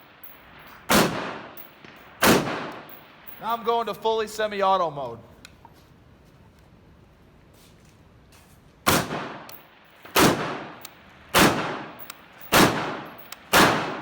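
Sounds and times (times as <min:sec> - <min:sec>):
rifle shots with echo: 0:00.0 - 0:03.1, 0:08.9 - 0:14.0.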